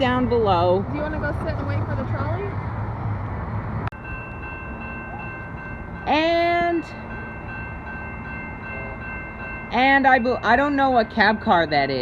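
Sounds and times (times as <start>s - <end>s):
high-pitched ringing tone: 4.0s - 12.0s.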